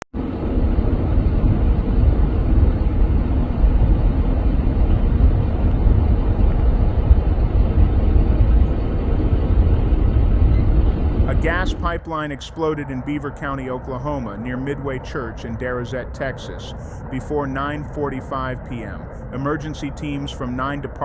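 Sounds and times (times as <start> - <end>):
roar of burning gas: 0.3 - 11.8.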